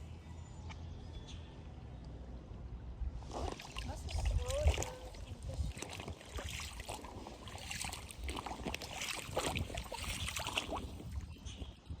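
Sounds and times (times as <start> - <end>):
wind buffeting microphone: 3.1 - 12.0
creek water running: 3.3 - 11.3.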